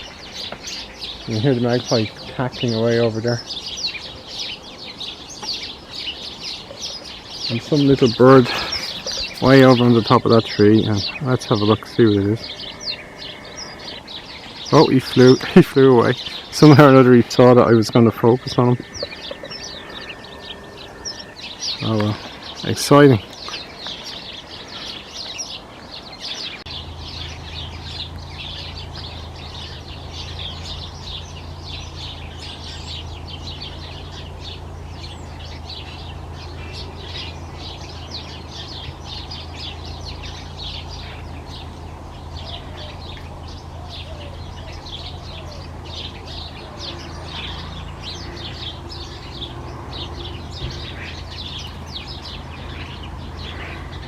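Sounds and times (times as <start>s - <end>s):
garden birds: 0.0s - 54.0s
sparrows chirping: 0.0s - 54.0s
steady low hum: 4.6s - 24.9s.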